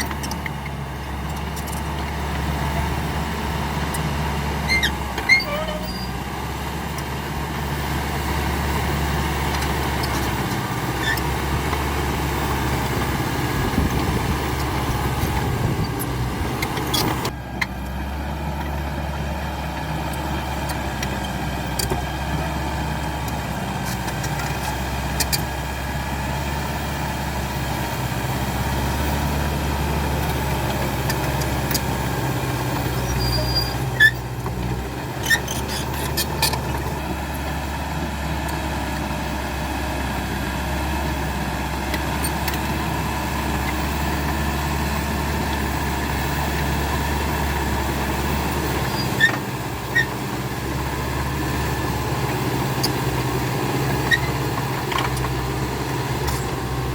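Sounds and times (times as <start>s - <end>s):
bulldozer diesel engine running: 0.0s - 56.9s.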